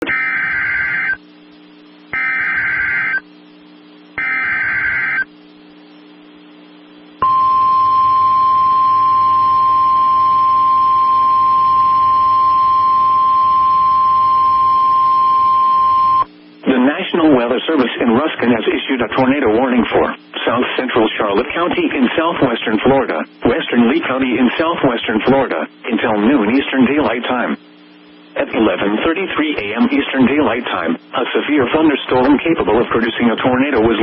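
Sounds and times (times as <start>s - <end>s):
warbling digital data tones: 0.0s - 1.2s, 2.1s - 3.2s, 4.2s - 5.3s
steady attention tone: 0.0s - 16.6s.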